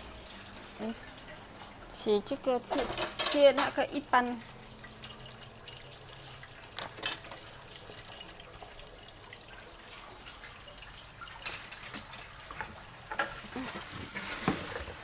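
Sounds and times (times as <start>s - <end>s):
water running into sink: 0.0s - 15.0s
dishes clattering: 2.7s - 3.8s, 6.7s - 7.5s, 11.4s - 15.0s.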